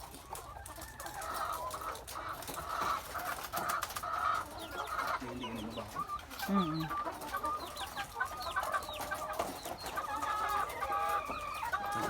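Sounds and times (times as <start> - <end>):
hens clucking: 0.0 - 12.0.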